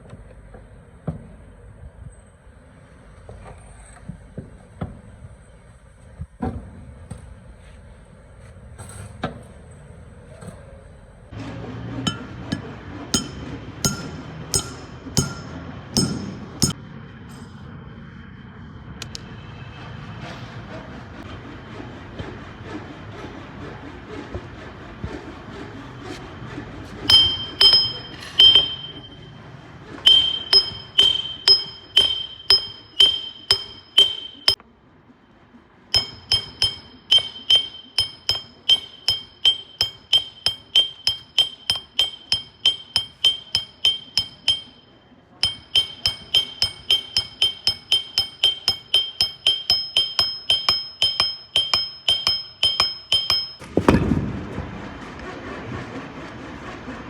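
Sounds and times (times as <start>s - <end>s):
hammer striking metal: 12.1s - 16.8s, 27.1s - 29.4s, 30.0s - 34.6s, 36.0s - 54.0s.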